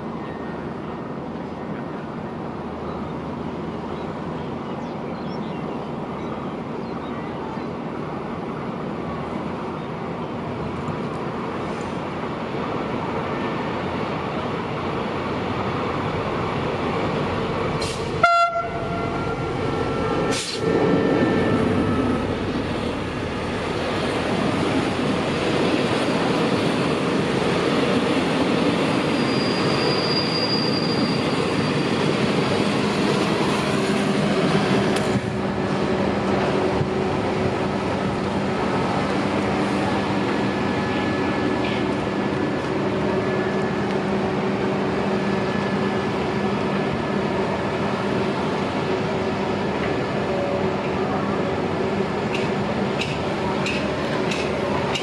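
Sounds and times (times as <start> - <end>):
train rumbling: 0.0 - 55.0
train horn blast: 18.1 - 22.0.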